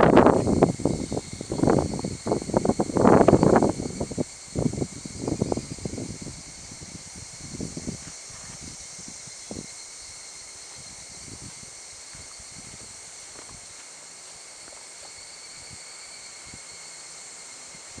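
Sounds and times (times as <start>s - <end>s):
wind buffeting microphone: 0.0s - 9.8s, 10.7s - 13.8s
high-pitched insect chorus: 0.0s - 18.0s.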